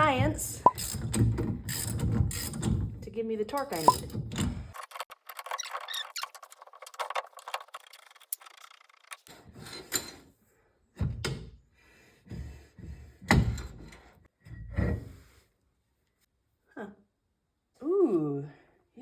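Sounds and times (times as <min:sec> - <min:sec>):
rapid ratchet clicking: 0:00.7 - 0:02.7, 0:04.7 - 0:09.3
metal parts knocking and scraping: 0:00.7 - 0:03.0, 0:03.6 - 0:10.2.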